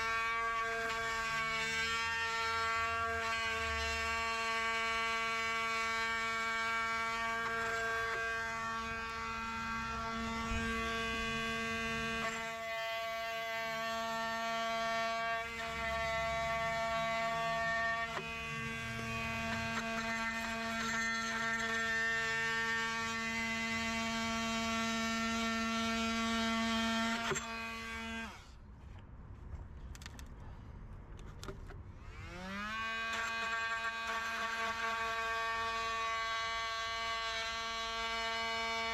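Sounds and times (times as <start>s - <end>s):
electric motor humming: 0.0s - 28.5s, 32.0s - 38.9s.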